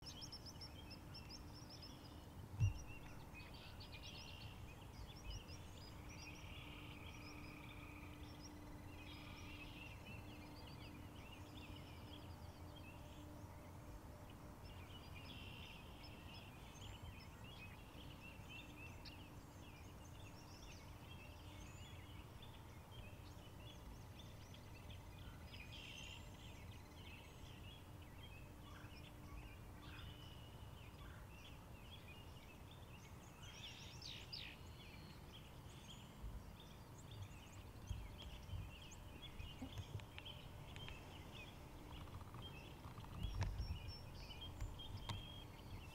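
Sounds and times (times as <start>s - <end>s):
birds chirping: 0.0s - 45.9s
faint hum: 0.0s - 45.9s
low outdoor rumble: 0.0s - 45.9s.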